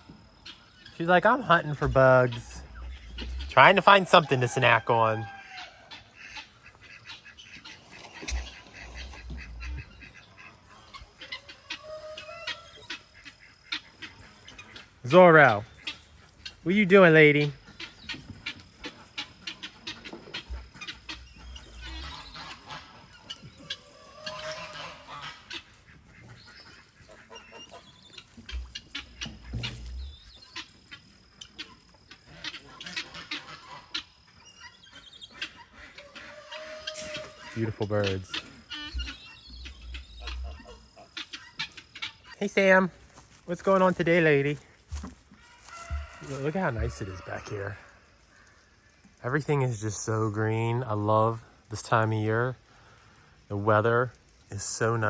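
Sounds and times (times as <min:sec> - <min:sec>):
poultry calling: 0:00.0 - 0:50.0
low rumbles: 0:01.6 - 0:04.2.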